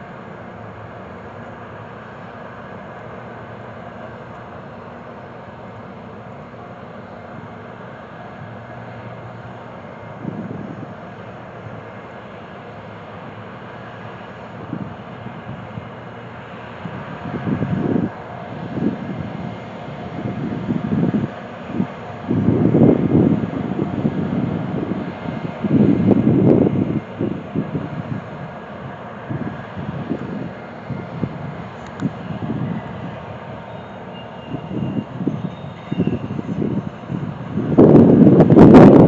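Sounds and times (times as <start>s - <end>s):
wind buffeting microphone: 9.2s - 11.1s, 14.5s - 16.0s, 16.8s - 33.7s, 34.3s - 39.0s.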